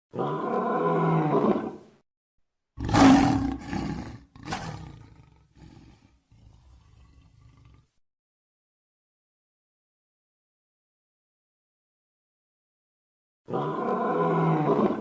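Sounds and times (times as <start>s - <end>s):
lion roaring: 2.8s - 8.0s, 13.5s - 15.0s.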